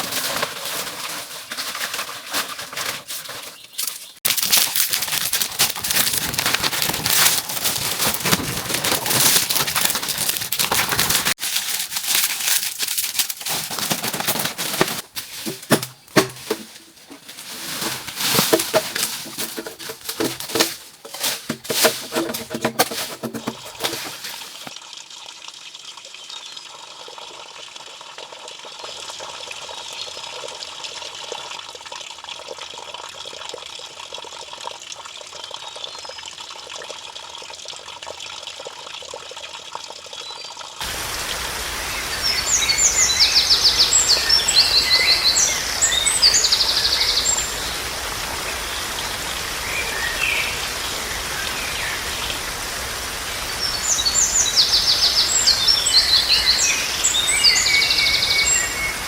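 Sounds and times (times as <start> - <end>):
water trickling and pouring: 4.3 - 41.5
steady outdoor hiss: 40.8 - 59.0.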